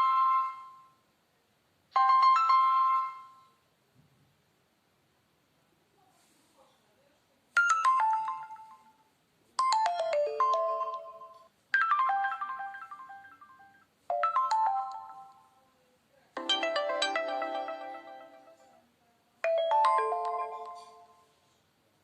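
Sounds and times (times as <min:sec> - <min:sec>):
phone ringtone falling notes: 0:00.0 - 0:00.9, 0:02.0 - 0:03.6, 0:07.6 - 0:09.0, 0:09.6 - 0:15.5, 0:16.4 - 0:18.7, 0:19.4 - 0:21.3.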